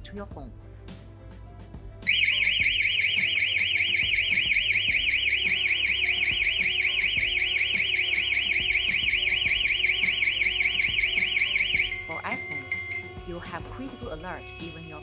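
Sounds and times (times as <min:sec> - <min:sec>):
alarm siren fast warble: 0:02.1 - 0:13.1.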